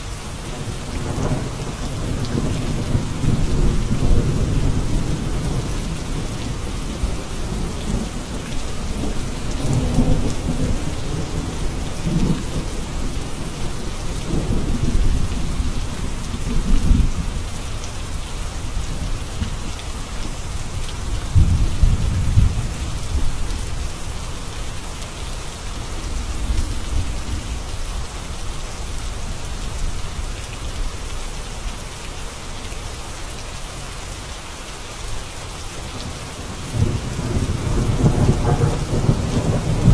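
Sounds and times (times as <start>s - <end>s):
steady rain hissing: 0.0s - 39.9s
low rolling thunder: 0.5s - 17.6s, 21.0s - 24.0s, 35.8s - 39.9s.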